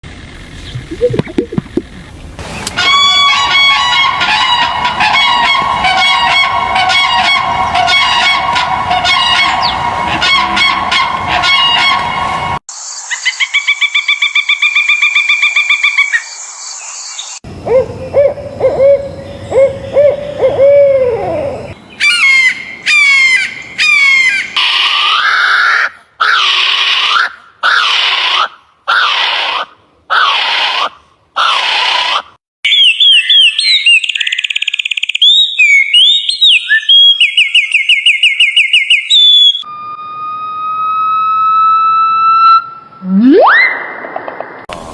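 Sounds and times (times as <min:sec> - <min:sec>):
bird calls: 0:00.5 - 0:02.7, 0:13.0 - 0:24.9, 0:32.7 - 0:39.6.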